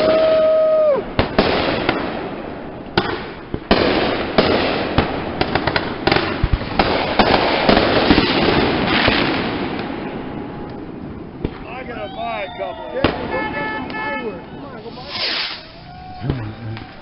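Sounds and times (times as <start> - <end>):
firework whistle: 0.0 - 1.0, 11.9 - 17.0
fireworks bangs and crackling: 0.0 - 17.0.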